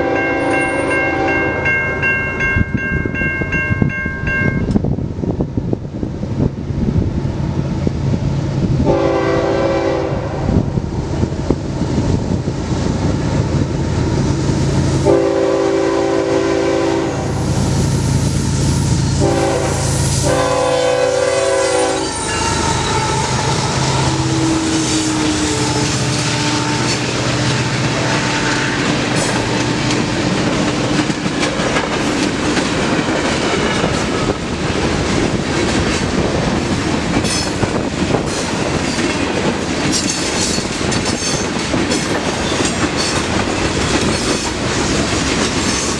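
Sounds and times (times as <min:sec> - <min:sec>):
locomotive chord horn: 0:00.0 - 0:01.7, 0:08.8 - 0:10.7, 0:13.8 - 0:17.6, 0:18.5 - 0:30.1
diesel locomotive engines running: 0:04.7 - 0:45.9
freight cars clickety-clack: 0:22.8 - 0:45.9.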